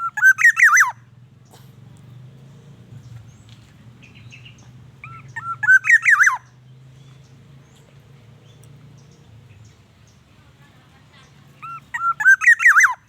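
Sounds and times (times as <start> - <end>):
bird fluty whistled call: 0.0 - 1.0, 4.3 - 6.5, 11.6 - 13.0.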